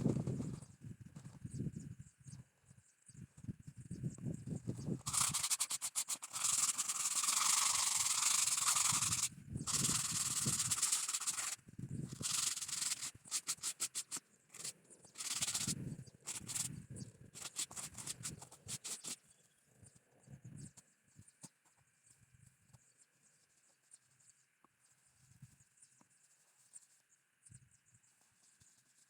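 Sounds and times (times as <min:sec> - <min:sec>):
sandpaper rubbing on wood: 0:05.0 - 0:16.7, 0:17.4 - 0:19.2.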